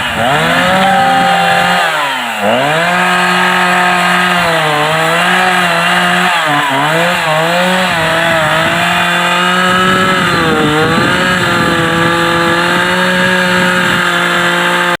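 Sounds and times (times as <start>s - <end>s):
chainsaw cutting wood: 0.0s - 15.0s.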